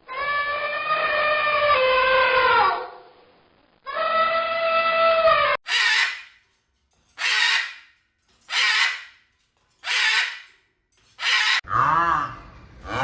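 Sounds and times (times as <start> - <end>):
bird cawing: 5.6 - 6.4, 7.2 - 7.9, 8.5 - 9.2, 9.8 - 10.6, 11.2 - 11.6.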